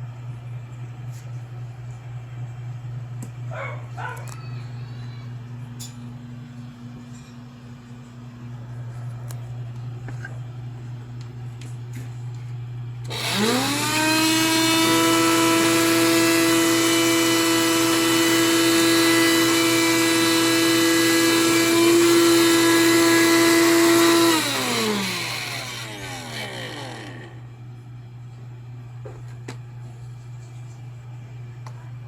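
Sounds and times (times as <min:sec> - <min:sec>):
vacuum cleaner motor whining: 0:13.0 - 0:27.5.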